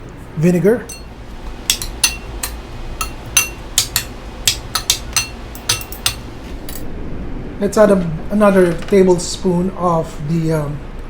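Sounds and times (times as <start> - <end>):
utensil clinking against bowl: 0.9 - 6.8.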